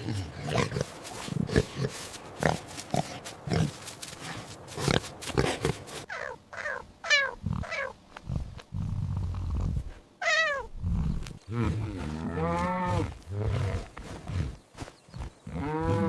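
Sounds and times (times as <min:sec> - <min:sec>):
pig grunting: 0:00.0 - 0:06.0
cat meowing: 0:10.2 - 0:10.7.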